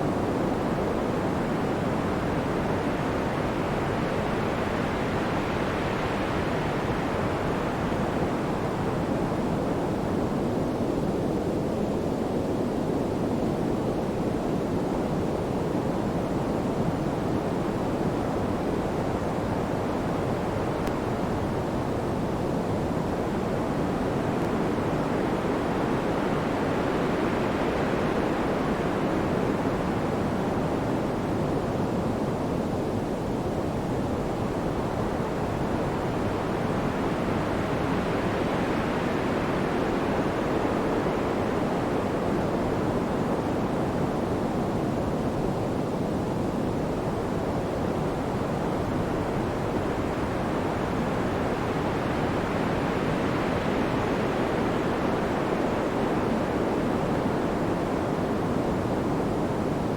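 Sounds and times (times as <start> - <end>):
pink noise hiss: 12.8 - 59.9.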